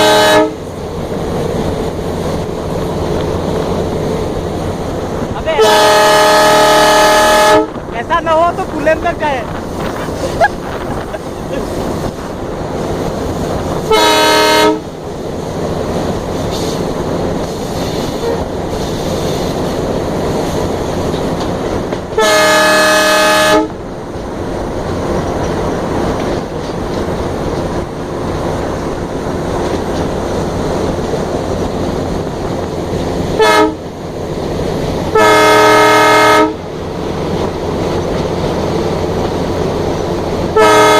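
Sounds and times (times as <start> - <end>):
diesel locomotive horn: 0.0 - 0.7, 5.5 - 7.9, 13.8 - 15.0, 18.1 - 18.6, 22.1 - 23.8, 33.3 - 34.0, 35.1 - 36.8, 40.5 - 40.9
locomotive engine and wheels on rails: 0.0 - 40.9.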